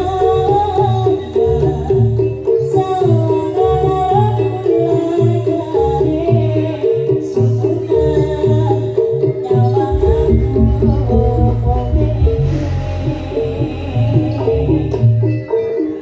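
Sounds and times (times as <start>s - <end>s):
person singing: 2.7s - 16.0s
band music with pitched melody: 7.5s - 16.0s.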